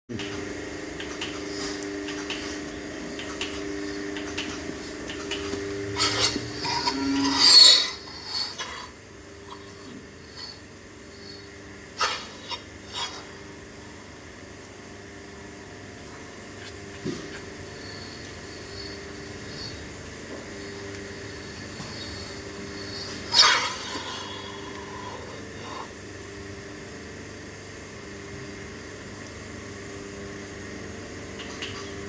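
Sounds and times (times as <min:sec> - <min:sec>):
milking machine humming: 0:00.1 - 0:32.0
hissing and metal clatter: 0:01.0 - 0:08.9, 0:09.5 - 0:13.3, 0:17.0 - 0:24.6.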